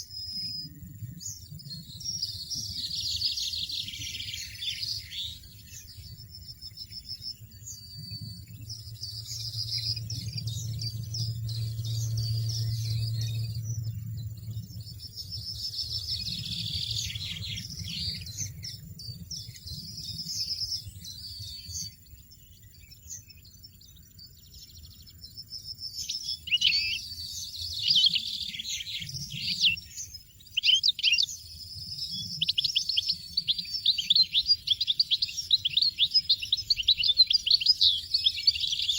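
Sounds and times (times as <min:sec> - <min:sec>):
finches chirping and twittering: 0:00.0 - 0:38.9
low hum: 0:07.9 - 0:19.9.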